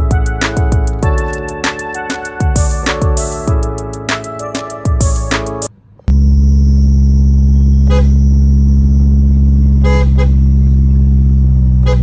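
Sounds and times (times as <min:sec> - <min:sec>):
short horn blips: 0:06.1 - 0:10.8, 0:11.7 - 0:12.0
loud car horn blast: 0:07.8 - 0:08.3, 0:09.8 - 0:10.5, 0:11.8 - 0:12.0.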